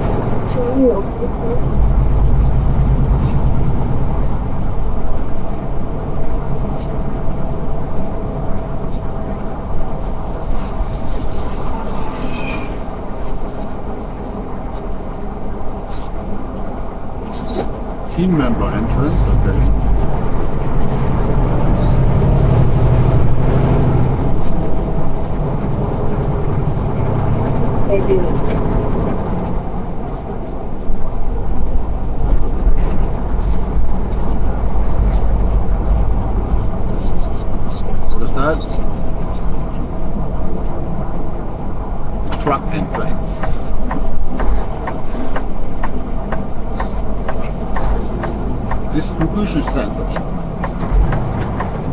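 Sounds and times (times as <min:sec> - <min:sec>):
truck engine rumble: 0:00.0 - 0:51.9.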